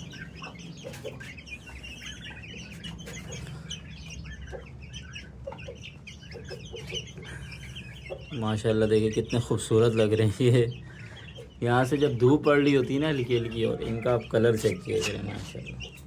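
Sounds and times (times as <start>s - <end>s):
chicks cheeping: 0.0s - 16.0s.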